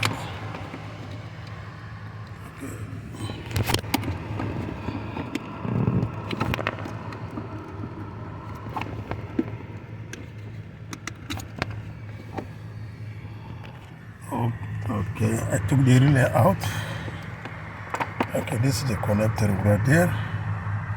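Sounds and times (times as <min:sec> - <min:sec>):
steady low hum: 0:00.0 - 0:20.9.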